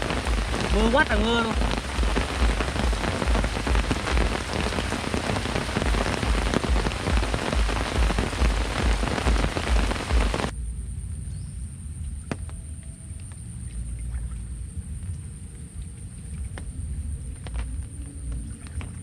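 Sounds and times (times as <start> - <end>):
heavy rain falling: 0.0 - 10.5.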